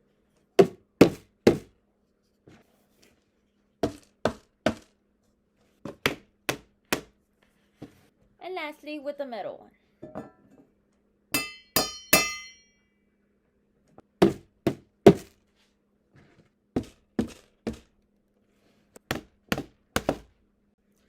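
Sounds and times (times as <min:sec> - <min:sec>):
spoon striking metal pot: 0:11.4 - 0:12.8
dull knocks on containers: 0:14.2 - 0:15.4, 0:19.1 - 0:20.3.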